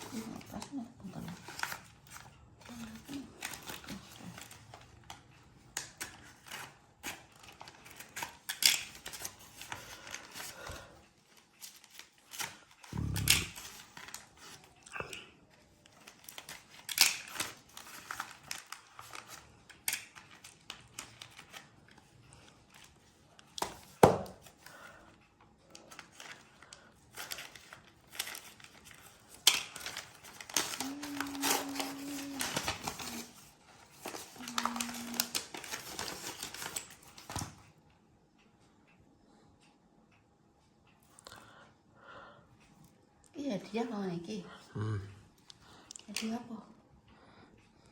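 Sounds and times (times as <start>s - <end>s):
wrapping crinkling and tearing: 0.0s - 24.7s, 25.8s - 37.6s.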